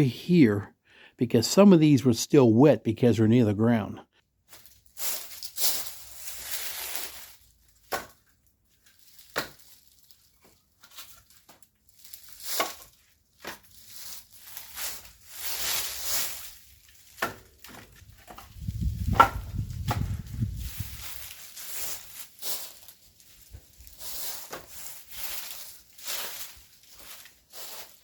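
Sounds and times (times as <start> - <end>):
rustling and scraping: 4.4 - 28.0
wood knocking on wood: 19.1 - 20.1.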